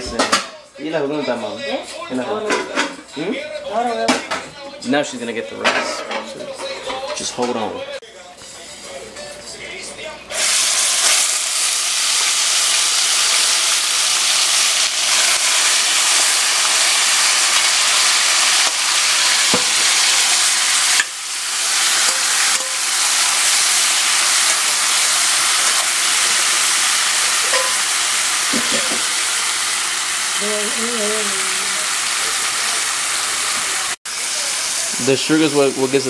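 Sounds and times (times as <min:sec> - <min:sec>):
meat sizzling in a pot: 0:10.3 - 0:36.0.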